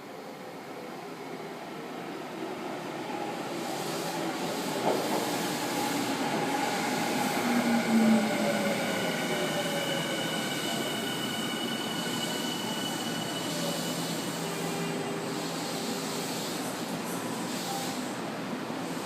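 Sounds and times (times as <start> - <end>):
high steady squeal: 6.6 - 15.1.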